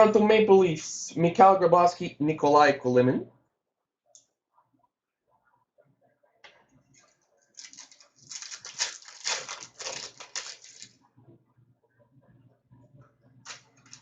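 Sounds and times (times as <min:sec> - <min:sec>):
card wrappers crinkling: 0:07.5 - 0:11.0, 0:13.5 - 0:14.0.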